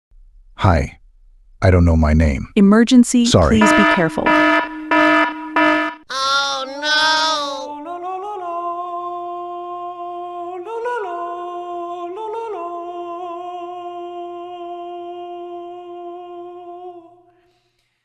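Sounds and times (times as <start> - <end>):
person humming a note: 6.1 - 7.8.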